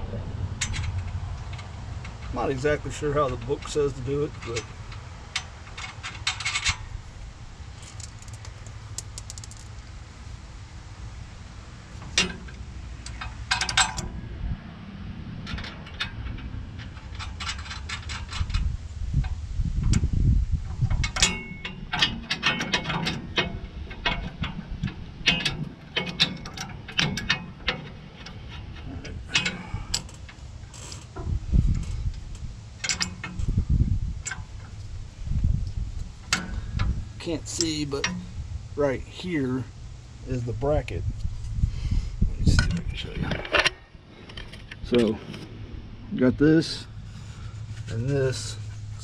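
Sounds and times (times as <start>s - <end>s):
ratchet wrench clicking: 7.8s - 9.7s
tools clinking on metal: 21.0s - 24.4s, 29.3s - 30.2s.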